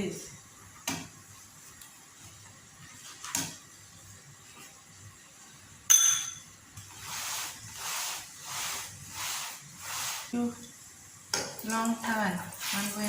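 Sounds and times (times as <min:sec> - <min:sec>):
utensil clinking on pan: 0:05.9 - 0:06.5
chapati sizzling in pan: 0:06.7 - 0:13.0.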